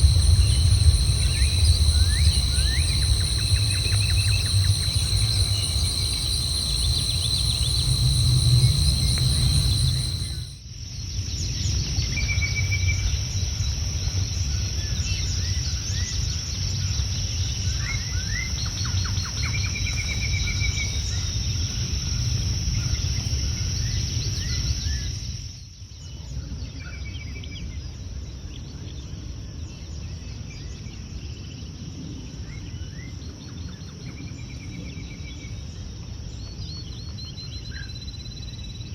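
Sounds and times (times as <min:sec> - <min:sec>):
birds chirping and trilling: 0:00.0 - 0:10.5
high insect drone: 0:00.0 - 0:10.6
low rumble: 0:00.0 - 0:10.6.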